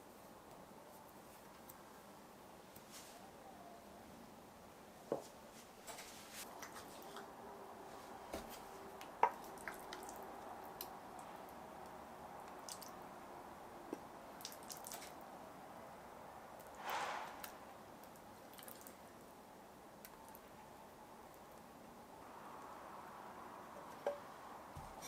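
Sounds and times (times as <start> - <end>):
soft wet squishing: 8.0 - 13.1, 13.9 - 15.3, 17.4 - 19.1.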